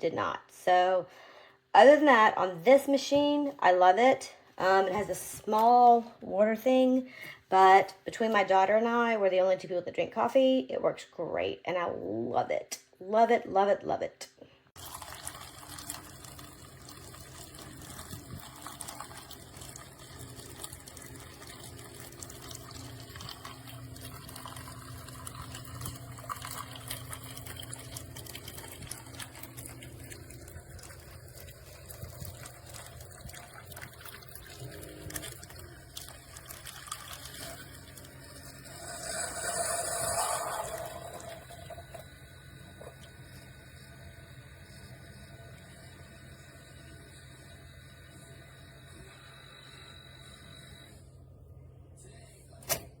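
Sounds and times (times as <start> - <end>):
liquid running into a cup: 14.8 - 49.6.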